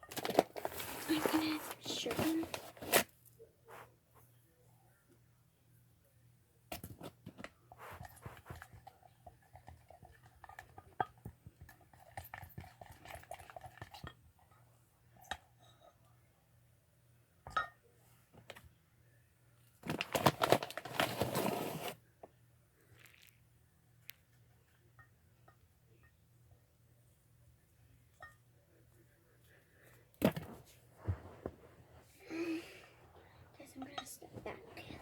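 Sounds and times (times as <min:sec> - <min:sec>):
gritty scraping of stirring: 0:20.4 - 0:22.0.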